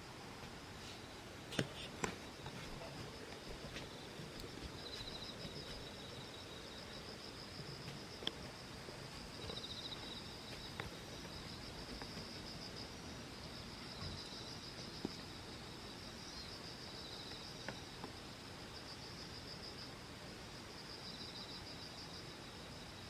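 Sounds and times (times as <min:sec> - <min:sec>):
insects chirring: 0:00.1 - 0:19.9
insect trills: 0:01.5 - 0:19.9.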